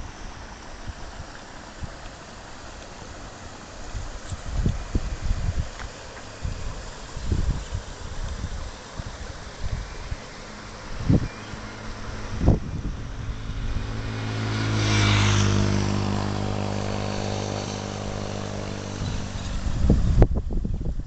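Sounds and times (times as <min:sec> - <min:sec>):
vehicle engine passing by: 0:09.8 - 0:20.4.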